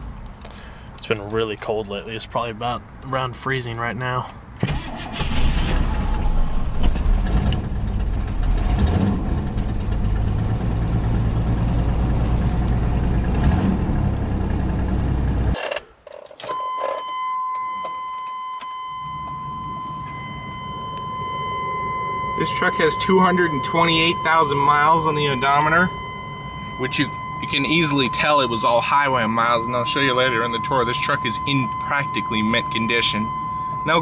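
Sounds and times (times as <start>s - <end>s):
engine running: 4.6s - 15.6s
high warning chime: 16.4s - 34.0s.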